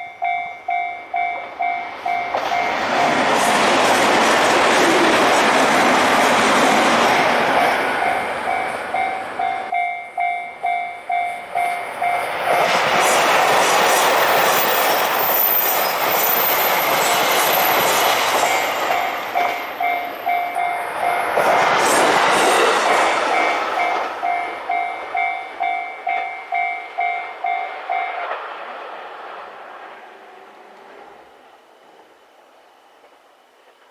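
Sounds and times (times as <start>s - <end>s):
diesel train passing: 0.0s - 33.9s
level crossing alarm clanging: 14.4s - 21.5s, 23.3s - 28.2s.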